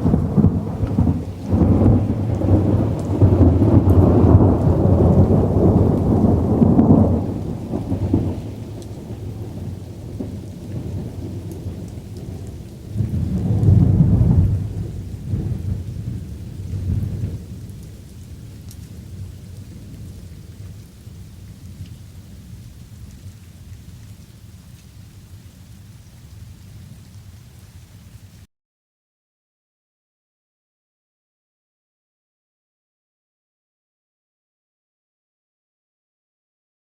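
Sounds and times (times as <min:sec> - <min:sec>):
thunder rumbling: 0:00.0 - 0:23.4
light rain: 0:00.0 - 0:28.5.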